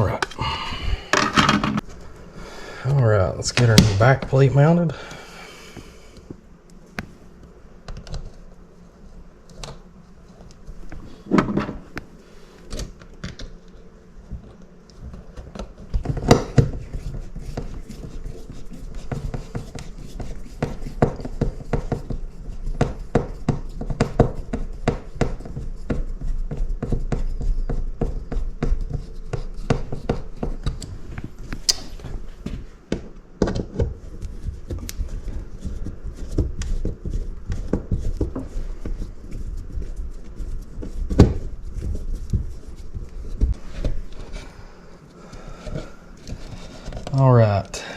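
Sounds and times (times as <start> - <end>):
scratching tapping and thunks: 32.4 - 44.2.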